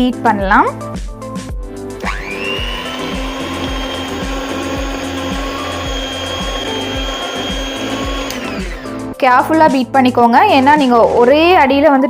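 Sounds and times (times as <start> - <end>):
electric mixer motor whine: 2.0 - 9.2.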